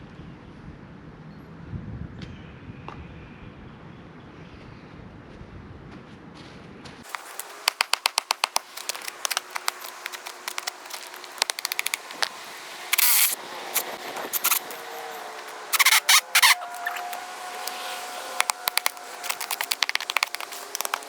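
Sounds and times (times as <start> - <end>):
sharp clicks and knocks: 7.1 - 17.8, 18.4 - 21.0
loud scraping hiss: 7.1 - 21.0.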